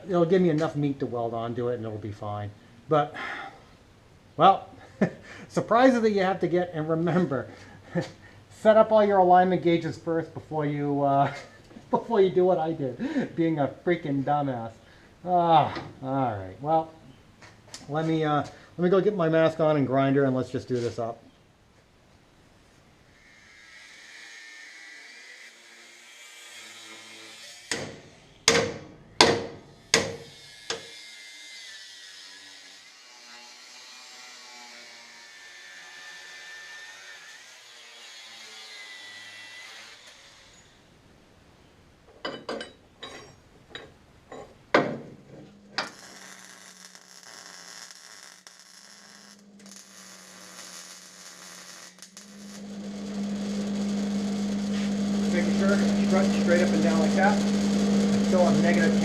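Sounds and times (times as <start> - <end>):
buzzing hiss with low hum: 40.4 - 59.0
angle grinder cutting steel: 45.7 - 59.0.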